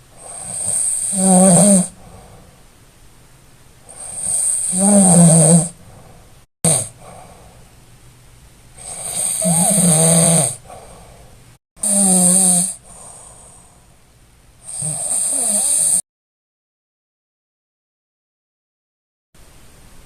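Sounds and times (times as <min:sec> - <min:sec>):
person snoring heavily: 0:00.2 - 0:02.4, 0:03.9 - 0:05.8, 0:06.7 - 0:07.3, 0:08.8 - 0:11.0, 0:11.8 - 0:13.7, 0:14.6 - 0:16.0
quiet breathing: 0:01.7 - 0:02.8, 0:05.6 - 0:07.9, 0:10.5 - 0:11.6, 0:12.6 - 0:16.0.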